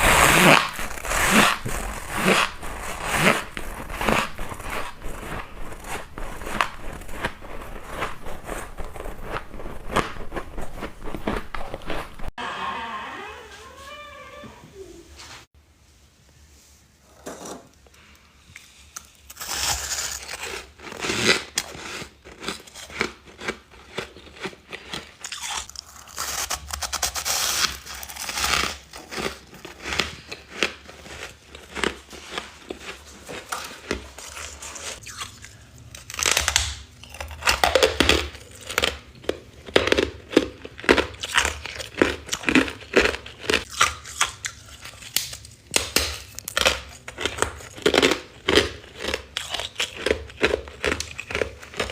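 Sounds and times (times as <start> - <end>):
ice crunching bites: 0.0 - 12.1, 19.0 - 51.9.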